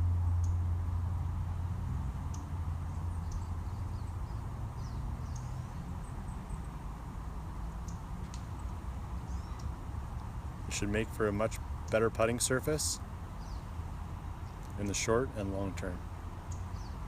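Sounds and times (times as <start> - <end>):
low outdoor rumble: 0.0 - 17.0
faint bird chirps: 7.8 - 9.8.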